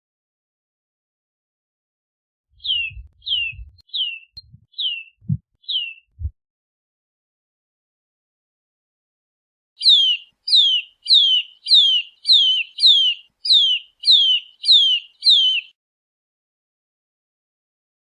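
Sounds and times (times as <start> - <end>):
bird calling high sliding notes: 2.6 - 4.2.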